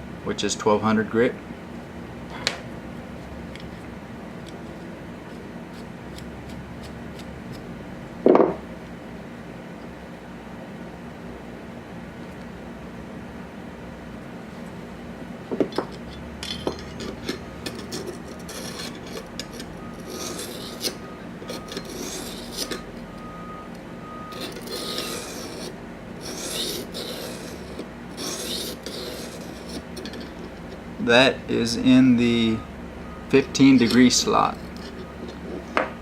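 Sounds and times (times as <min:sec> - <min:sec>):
diamond stone rasping on knife edge: 0:16.7 - 0:23.0, 0:24.3 - 0:30.6.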